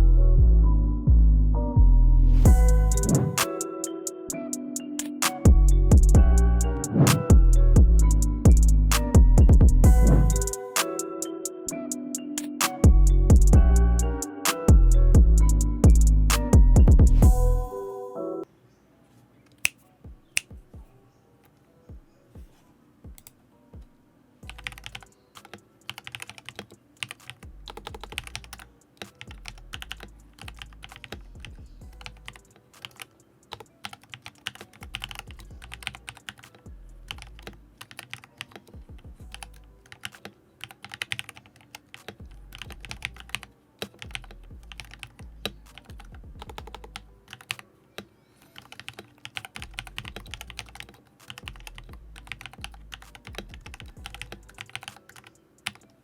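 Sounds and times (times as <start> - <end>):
mechanical keyboard typing: 24.4 - 47.7, 48.5 - 56.0.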